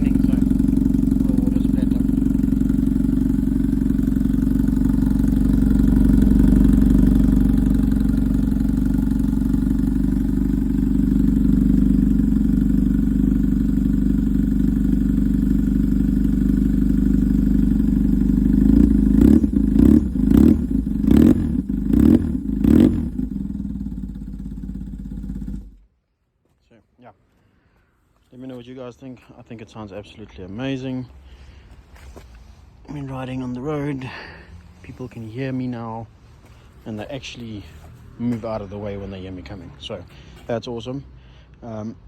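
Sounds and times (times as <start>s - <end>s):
motorcycle engine idling: 0.0s - 25.9s
motorcycle engine revving: 0.0s - 25.9s.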